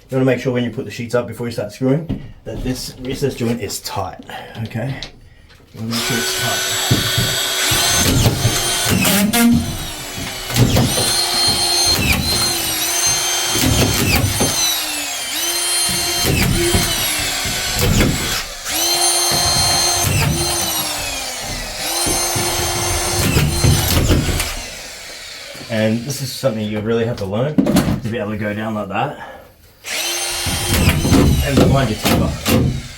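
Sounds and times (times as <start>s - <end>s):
power screwdriver whining: 5.8s - 26.0s, 29.8s - 32.9s
knocks: 6.0s - 14.8s, 15.7s - 24.8s, 30.3s - 32.9s.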